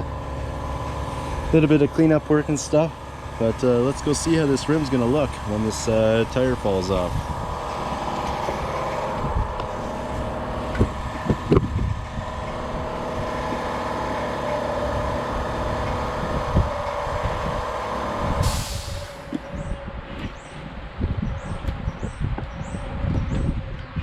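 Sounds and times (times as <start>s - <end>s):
engine running: 0.0s - 23.9s
burst of hiss: 18.4s - 19.4s.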